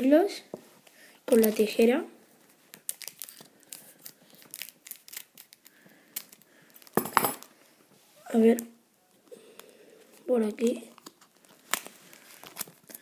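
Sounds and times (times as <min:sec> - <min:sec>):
scissors snipping packet: 0:02.8 - 0:07.0.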